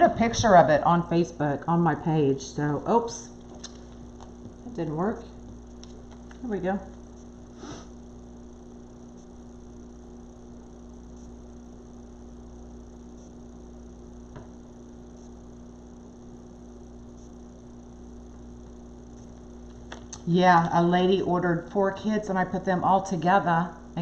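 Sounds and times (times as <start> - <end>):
electrical hum: 0.0 - 24.0.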